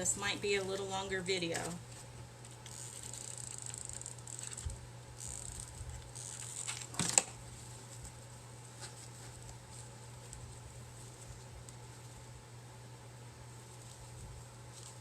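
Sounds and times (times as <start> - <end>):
low steady hum: 0.0 - 15.0
rope rustling on clay pot: 0.0 - 15.0
small ticks: 2.6 - 6.8.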